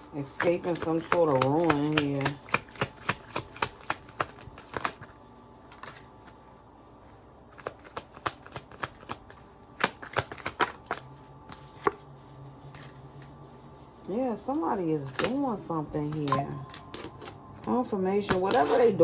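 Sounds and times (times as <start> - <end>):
cards shuffling and clicking: 0.4 - 5.1, 7.5 - 12.0.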